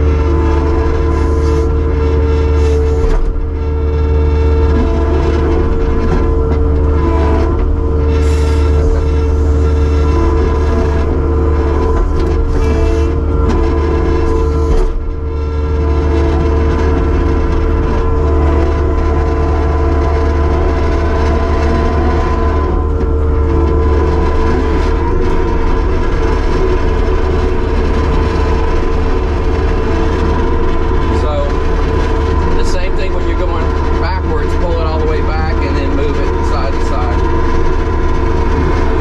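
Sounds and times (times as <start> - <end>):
diesel engine hum: 0.0 - 39.0
steady whining tones: 0.0 - 39.0.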